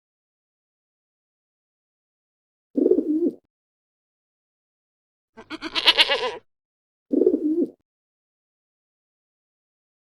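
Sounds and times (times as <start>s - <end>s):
quavering bleat: 5.4s - 6.4s.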